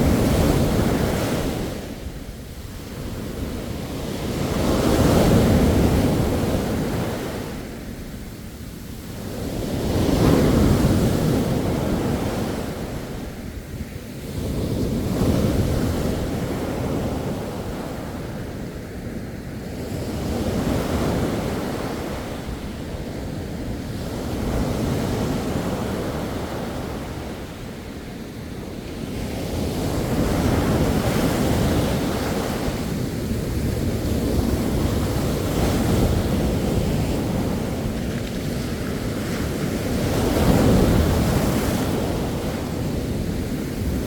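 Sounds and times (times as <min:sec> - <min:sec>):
sea waves breaking on shore: 0:28.5 - 0:44.0.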